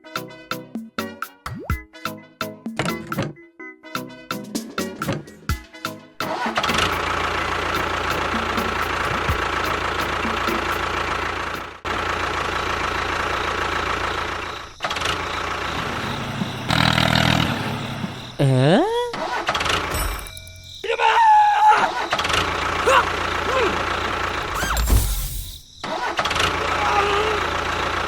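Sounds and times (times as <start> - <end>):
motor running: 6.5 - 20.6, 22.1 - 28.0.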